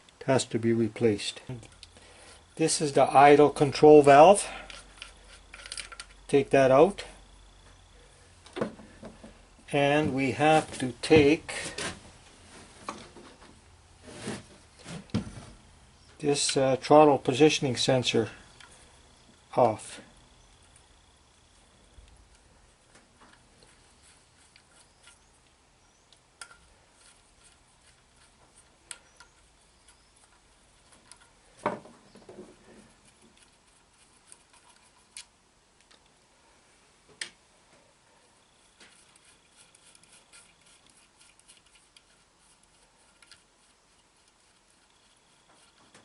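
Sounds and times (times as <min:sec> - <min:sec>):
hand tools clicking and tapping: 0:22.3 - 0:31.4.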